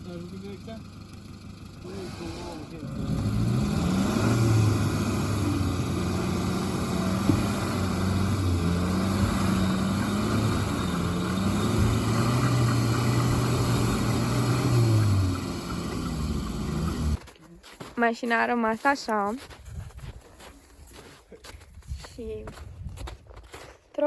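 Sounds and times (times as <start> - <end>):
car engine running under load: 0.0 - 17.2.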